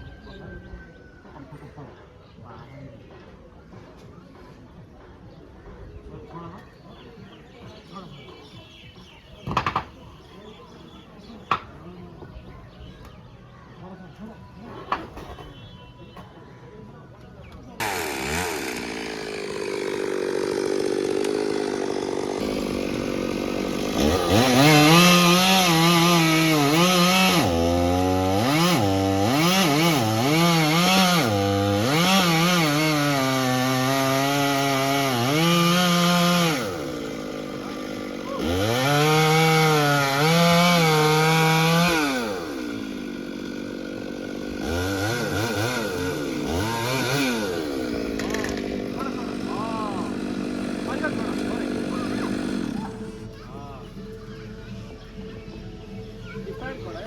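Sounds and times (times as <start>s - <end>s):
chainsaw cutting wood: 17.8s - 53.4s.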